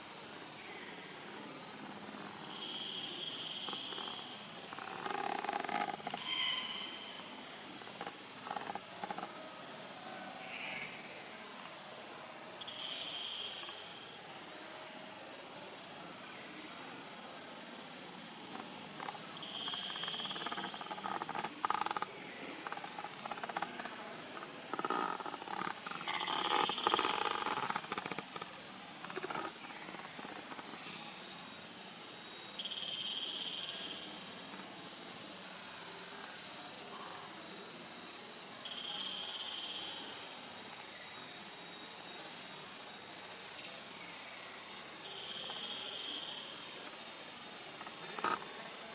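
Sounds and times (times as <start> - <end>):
insect chorus: 0.0 - 48.9
scattered animal sounds: 2.7 - 7.1, 18.5 - 31.0, 47.8 - 48.7.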